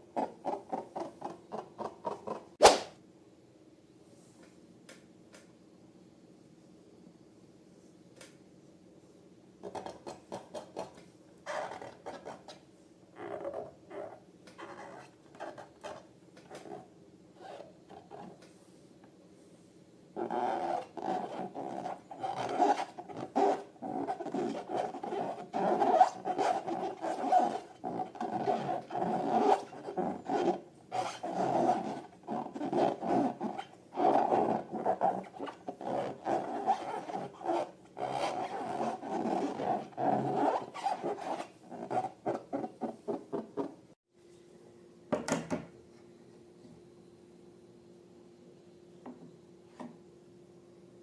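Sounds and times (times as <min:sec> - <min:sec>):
rubber balloon squeaking: 0:00.2 - 0:02.4, 0:11.5 - 0:12.5, 0:13.2 - 0:16.8, 0:20.2 - 0:43.8
click: 0:08.2 - 0:08.4.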